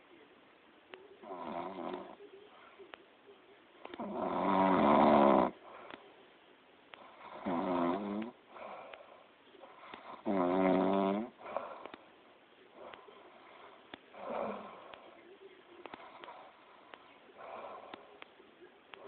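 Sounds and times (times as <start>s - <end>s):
loud snoring: 1.2s - 2.2s, 4.0s - 5.6s, 7.2s - 8.4s, 10.0s - 11.8s, 14.2s - 15.0s.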